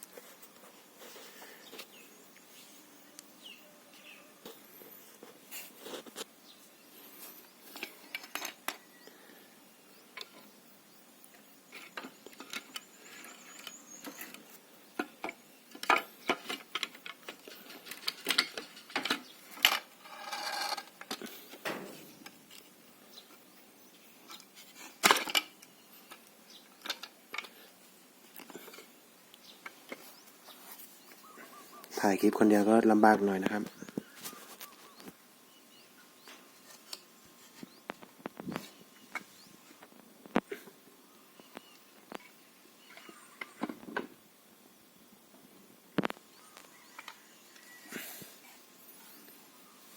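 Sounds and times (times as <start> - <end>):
metal rattling scrape: 17.4 - 20.9.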